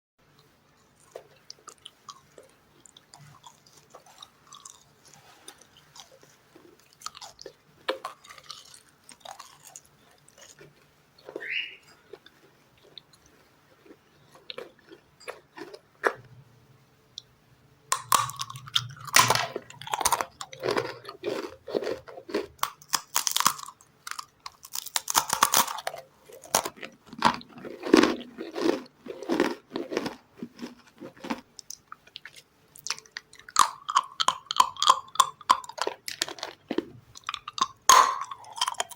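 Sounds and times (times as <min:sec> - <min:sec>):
soft wet chewing: 0:00.4 - 0:16.4, 0:17.9 - 0:38.9
crisp crunching bites: 0:17.9 - 0:38.9.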